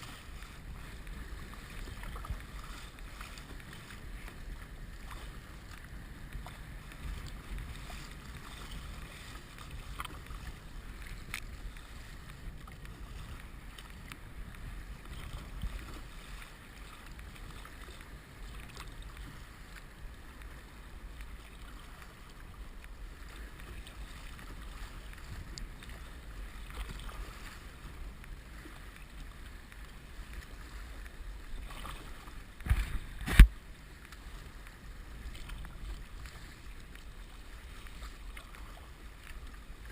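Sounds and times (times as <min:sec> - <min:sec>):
muffled sea water: 0:00.0 - 0:39.9
muffled wind noise: 0:00.0 - 0:39.9
faint ticks: 0:22.7 - 0:24.0, 0:25.1 - 0:26.0, 0:32.4 - 0:37.1.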